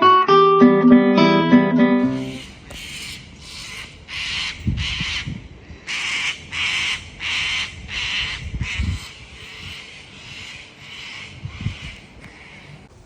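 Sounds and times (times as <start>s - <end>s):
bird rasping calls: 2.1s - 12.9s.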